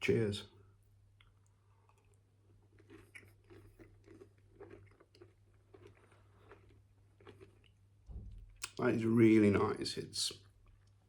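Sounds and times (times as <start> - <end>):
crunchy chewing of cookie: 1.2 - 8.0.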